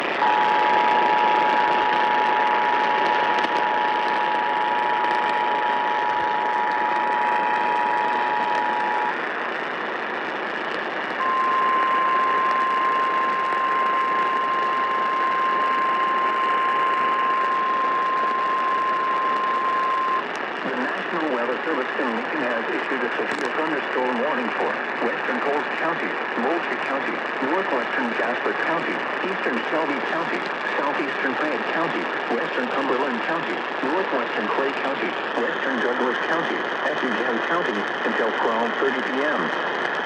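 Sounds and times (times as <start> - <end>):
radio hiss: 0.0 - 40.0.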